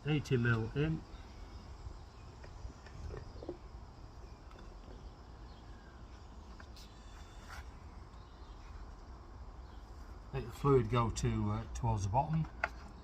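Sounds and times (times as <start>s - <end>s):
handling clicks and knocks: 12.2s - 13.0s.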